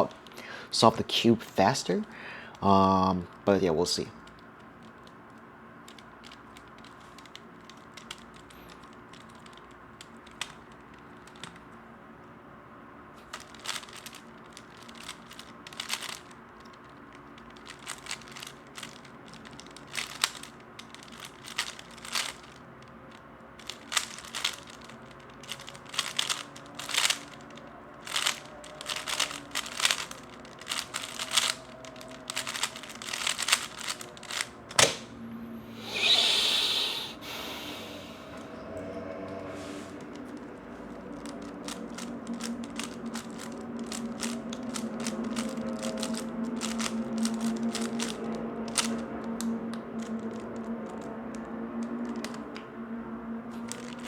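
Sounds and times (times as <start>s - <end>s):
faint steady hum: 0.0s - 54.0s
puzzle cube clicking: 13.3s - 22.6s, 23.6s - 35.0s, 35.8s - 38.2s, 41.2s - 49.0s.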